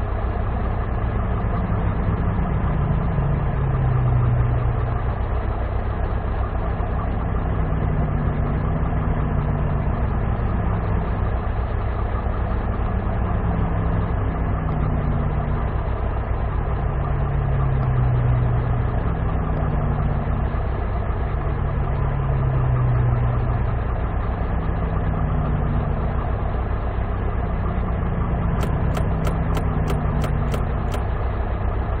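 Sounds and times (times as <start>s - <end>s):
sharp clicks: 28.6s - 31.0s.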